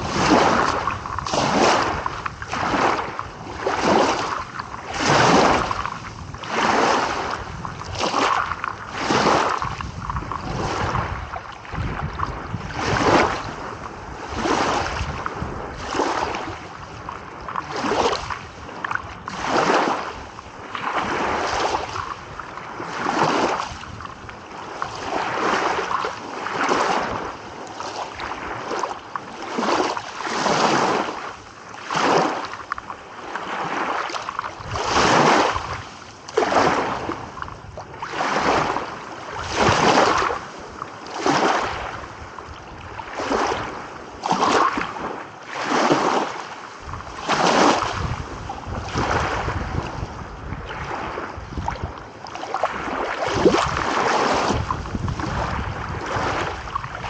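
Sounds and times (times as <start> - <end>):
small sea waves lapping: 0.0 - 57.0.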